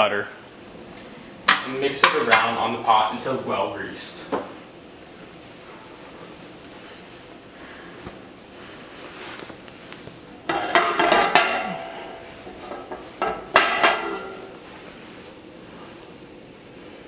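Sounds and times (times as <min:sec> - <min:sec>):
utensil clanking against a pot: 0:10.5 - 0:14.5.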